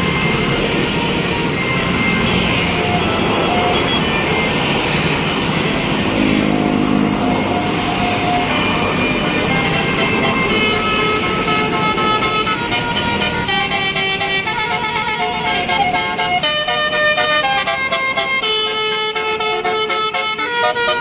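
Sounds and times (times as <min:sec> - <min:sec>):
bus engine running: 0:00.0 - 0:21.0
multi-tone bus horn notes: 0:00.0 - 0:21.0.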